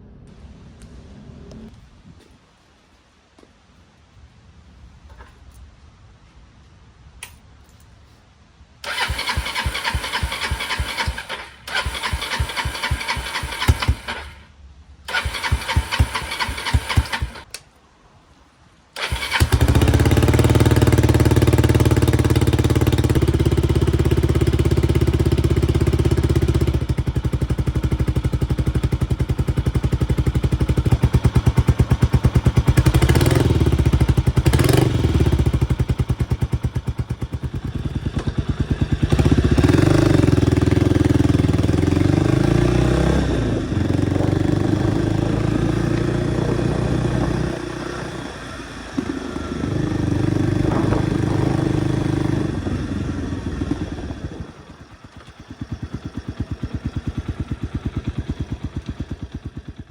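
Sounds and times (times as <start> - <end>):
engine starter cranking: 8.8 - 14.5, 15.1 - 17.6, 19.0 - 25.7
motorcycle engine idling: 8.8 - 14.5, 19.0 - 59.9.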